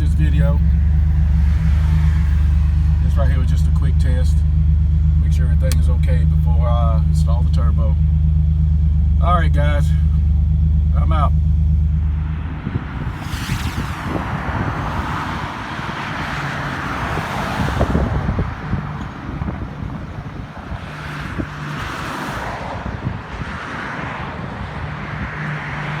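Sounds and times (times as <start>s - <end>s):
low engine hum: 0.0s - 26.0s
vehicle swishing past: 12.0s - 18.9s, 20.6s - 26.0s
tyre and wind noise: 12.0s - 26.0s.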